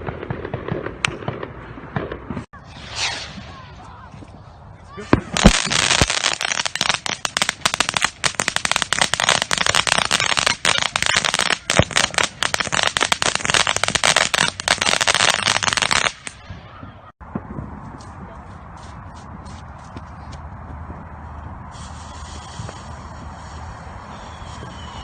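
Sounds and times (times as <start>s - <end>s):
fireworks crackling: 0.0s - 16.4s, 21.1s - 25.0s.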